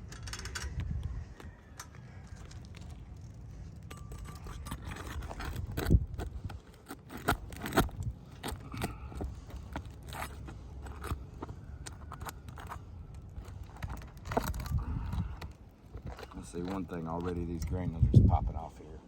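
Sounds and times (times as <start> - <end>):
metal bar scraping shingles: 3.8 - 17.5.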